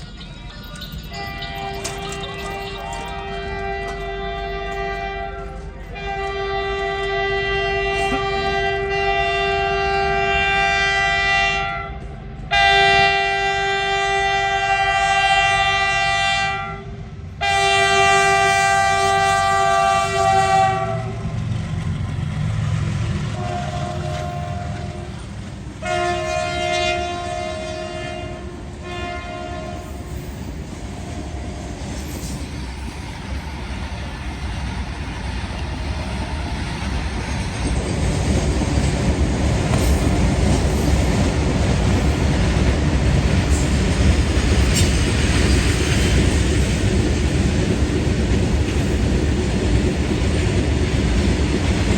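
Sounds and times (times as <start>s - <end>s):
passing train rumble: 0.0s - 51.9s
locomotive horn blasts: 1.1s - 21.3s, 23.4s - 30.3s.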